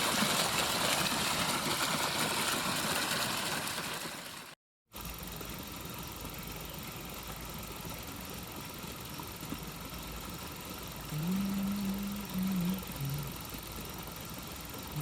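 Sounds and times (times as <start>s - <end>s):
waterfall pouring over rocks: 0.0s - 4.5s
low pitched sound: 11.1s - 13.4s.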